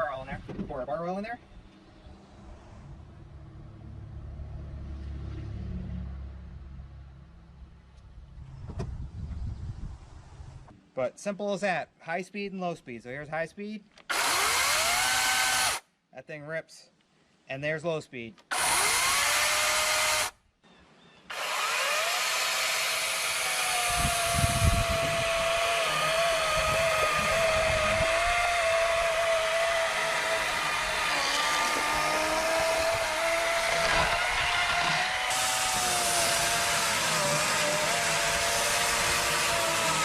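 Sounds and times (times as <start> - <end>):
electric chainsaw whining: 14.1 - 15.8, 18.5 - 20.3, 21.3 - 40.0.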